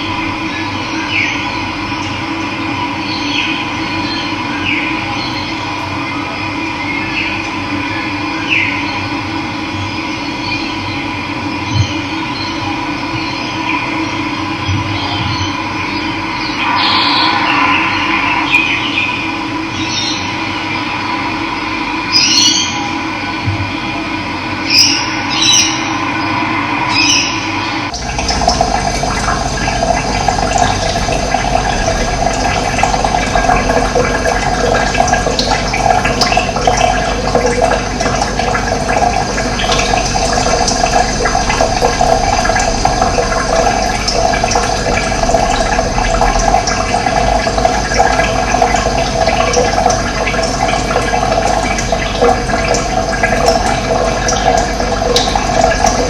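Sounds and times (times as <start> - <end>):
running water rushing: 0.0 - 2.2, 16.3 - 20.5, 26.6 - 56.0.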